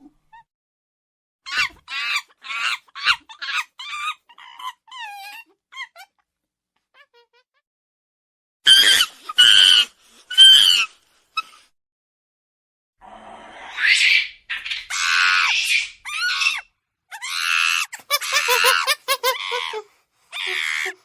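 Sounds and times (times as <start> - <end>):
monkey screaming: 1.5 - 6.1, 8.7 - 10.9, 13.7 - 21.0.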